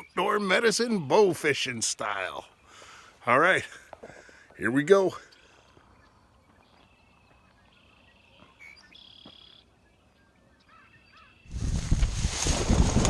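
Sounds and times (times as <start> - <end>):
faint bird chirps: 5.1 - 11.6.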